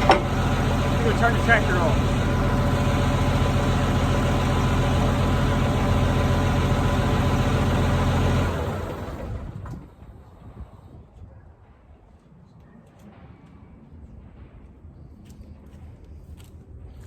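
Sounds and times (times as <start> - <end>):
diesel engine idling and shutting off: 0.0 - 11.2.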